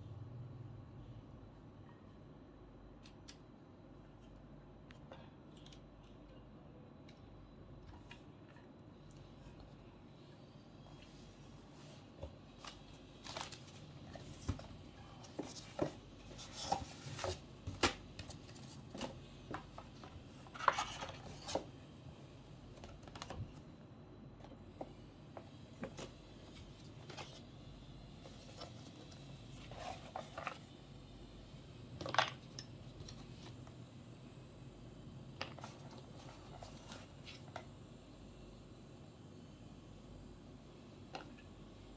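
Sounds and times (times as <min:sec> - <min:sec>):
objects and packaging handled: 0:11.9 - 0:21.8, 0:28.2 - 0:30.8, 0:35.4 - 0:37.7.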